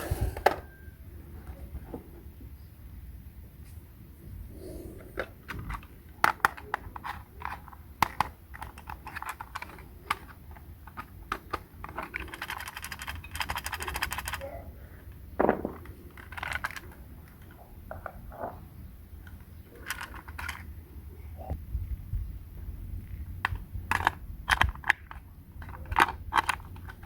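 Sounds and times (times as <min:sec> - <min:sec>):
plastic toy pieces clicking: 0:05.2 - 0:14.4, 0:15.6 - 0:17.6, 0:19.2 - 0:20.7, 0:23.4 - 0:27.0.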